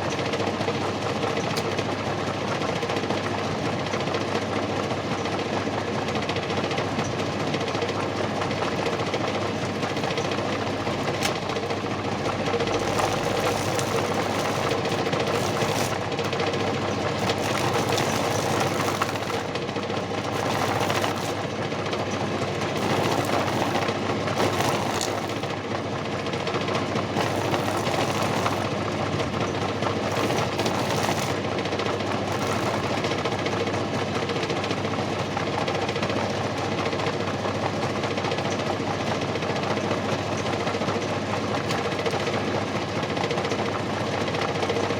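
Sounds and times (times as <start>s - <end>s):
feather plucker motor hum and rattle: 9.5s - 25.7s, 27.0s - 29.0s, 29.9s - 33.5s.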